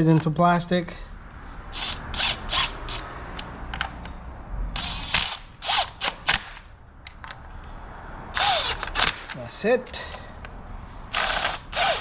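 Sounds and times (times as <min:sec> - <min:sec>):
hand ratchet clicking: 0:08.4 - 0:09.4, 0:11.1 - 0:12.0.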